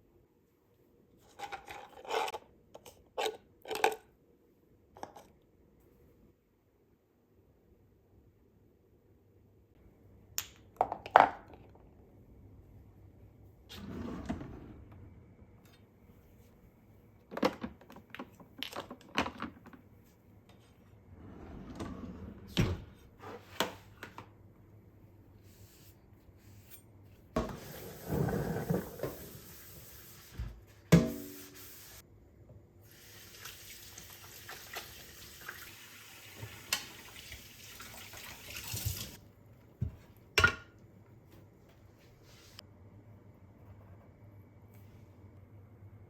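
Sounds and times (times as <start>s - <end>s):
tap running water: 33.0s - 39.2s.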